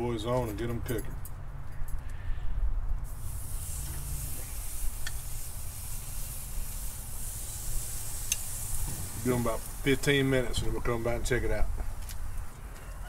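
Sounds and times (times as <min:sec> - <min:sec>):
steady low rumble: 0:00.0 - 0:12.6
meat sizzling on a grill: 0:03.1 - 0:12.5.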